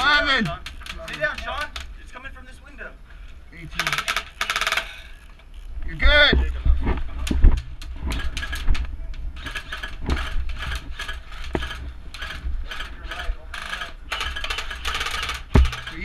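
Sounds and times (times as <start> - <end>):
rapid ratchet clicking: 3.8 - 5.7, 9.4 - 16.0
sharp knocks: 15.5 - 16.0.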